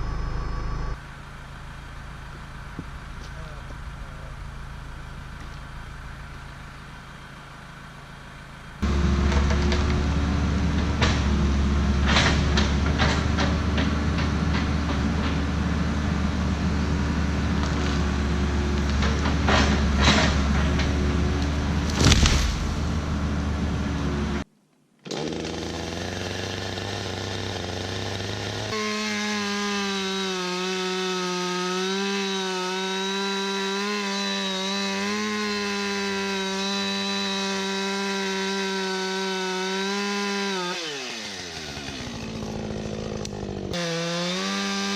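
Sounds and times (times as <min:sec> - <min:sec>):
deep engine rumble: 0:00.0 - 0:24.5
chainsaw cutting wood: 0:08.8 - 0:24.4, 0:25.0 - 0:44.9.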